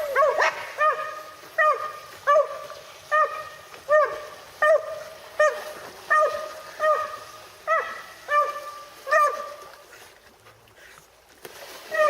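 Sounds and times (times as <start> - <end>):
hound baying: 0.0 - 1.0.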